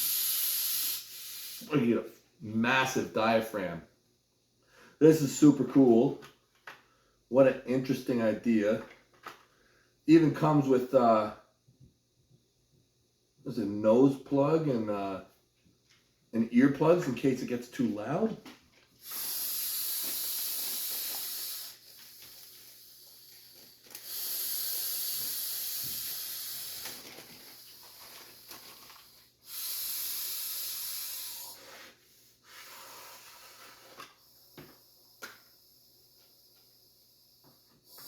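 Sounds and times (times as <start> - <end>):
breaths hissing through valve: 0.0 - 1.8, 19.0 - 38.0.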